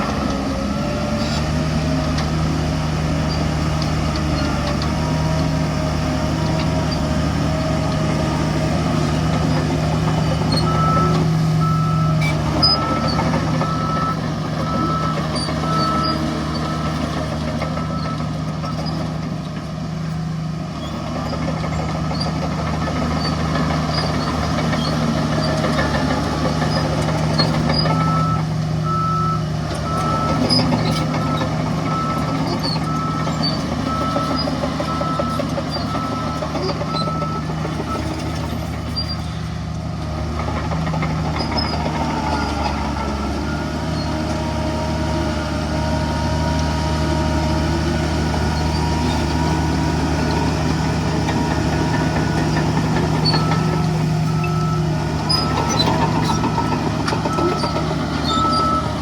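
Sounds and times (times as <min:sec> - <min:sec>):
diesel machinery engines running: 0:00.0 - 0:59.0
reversing alarm beeping: 0:09.5 - 0:19.0, 0:27.7 - 0:38.4, 0:41.8 - 0:44.6, 0:48.2 - 0:59.0.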